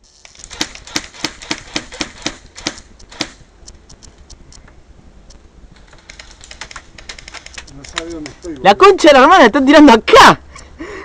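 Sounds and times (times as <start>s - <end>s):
airsoft guns firing: 0.3s - 3.4s, 5.8s - 8.4s.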